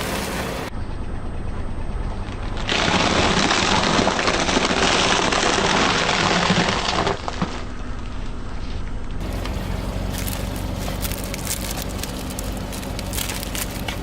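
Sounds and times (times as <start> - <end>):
low car hum: 0.0 - 3.3, 7.0 - 14.0
car tyre crushing crunchy object: 2.4 - 14.0.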